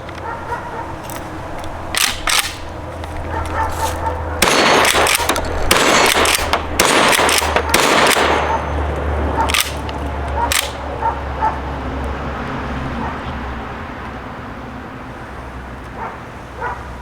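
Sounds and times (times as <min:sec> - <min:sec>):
shotgun action clacks: 0:01.9 - 0:10.8
loud shotgun shots: 0:02.0 - 0:02.7, 0:04.4 - 0:08.8, 0:09.4 - 0:09.8.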